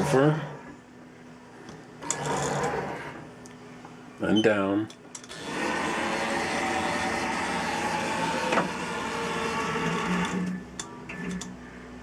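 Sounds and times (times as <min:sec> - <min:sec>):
servo drive whining: 0:02.0 - 0:03.3, 0:05.3 - 0:11.4.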